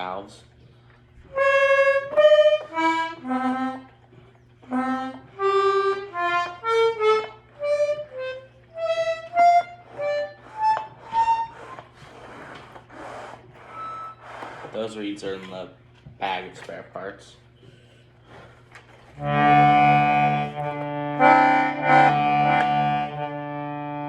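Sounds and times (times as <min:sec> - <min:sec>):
button accordion notes: 0:01.2 - 0:14.8, 0:19.1 - 0:24.0.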